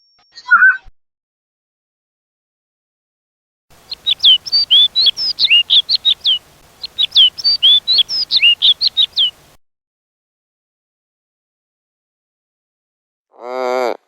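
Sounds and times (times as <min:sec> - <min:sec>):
songbird singing: 0:03.8 - 0:09.6.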